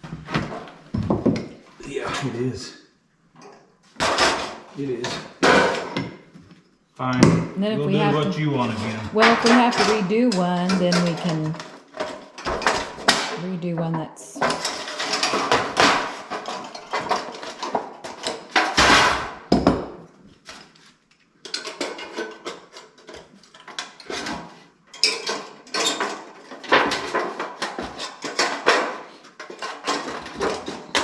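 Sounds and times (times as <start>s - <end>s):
floor boards knocking and scraping: 0.0s - 1.8s, 14.6s - 20.0s.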